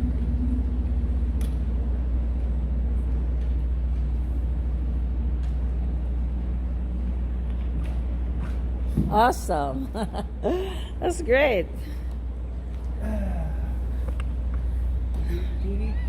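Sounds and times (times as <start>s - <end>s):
faint hum: 0.0s - 16.0s
low outdoor rumble: 0.0s - 16.0s.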